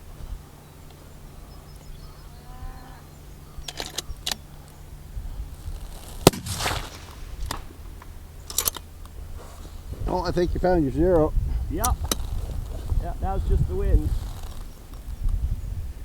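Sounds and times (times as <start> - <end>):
steady low hum: 0.0 - 11.8
rifle shot with echo: 6.2 - 7.8.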